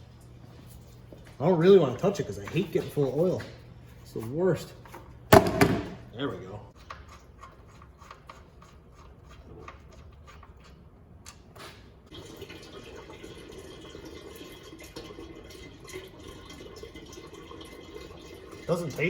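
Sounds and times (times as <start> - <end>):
oil pouring into a drain pan: 12.1 - 19.0.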